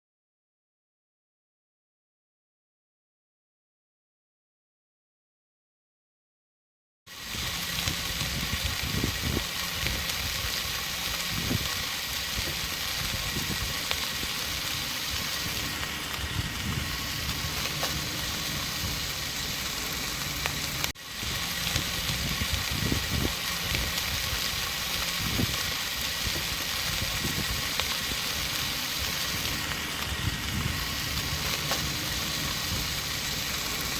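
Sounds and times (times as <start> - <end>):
campfire crackling and popping: 7.1 - 33.9
meat sizzling on a grill: 7.1 - 33.9.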